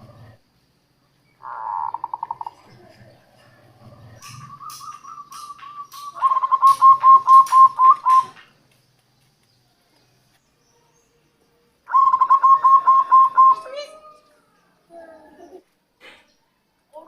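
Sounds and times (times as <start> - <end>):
dove cooing: 0.0 - 0.4, 1.4 - 8.4, 11.9 - 16.2.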